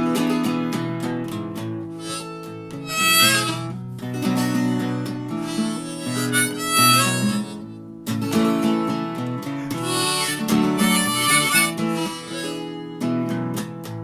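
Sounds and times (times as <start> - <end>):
strummed acoustic guitar: 0.0 - 14.0
harmonica playing: 1.9 - 7.9, 9.6 - 13.1.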